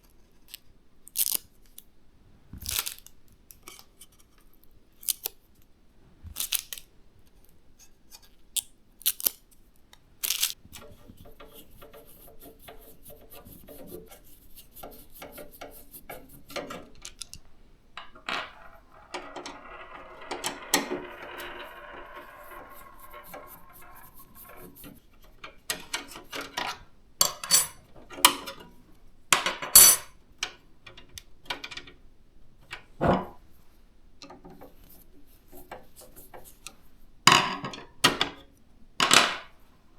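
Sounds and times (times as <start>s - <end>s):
clicks and taps of plastic and metal: 30.4s - 32.0s.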